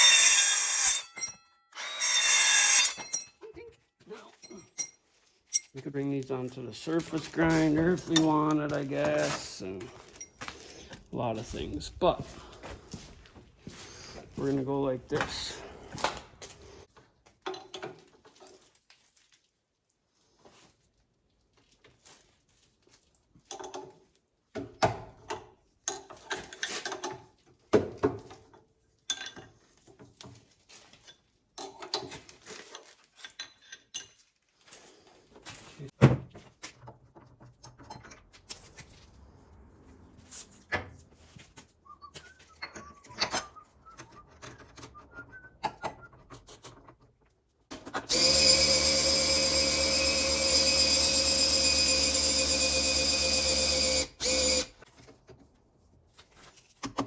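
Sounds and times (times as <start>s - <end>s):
metal tool clanks: 2.7s - 3.4s
milling machine motor whine: 48.1s - 54.7s.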